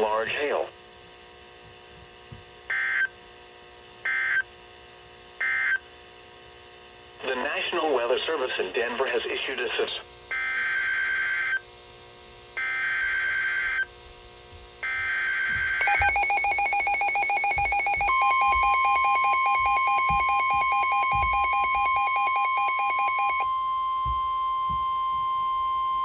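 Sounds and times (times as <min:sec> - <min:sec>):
fast pulsing electronic alarm: 0:02.7 - 0:03.2, 0:04.1 - 0:04.5, 0:10.3 - 0:11.6, 0:12.6 - 0:13.9, 0:14.8 - 0:26.0
steady warning tone: 0:02.7 - 0:03.2, 0:04.0 - 0:04.5, 0:14.8 - 0:26.0
buzzing data header bursts: 0:15.0 - 0:25.2.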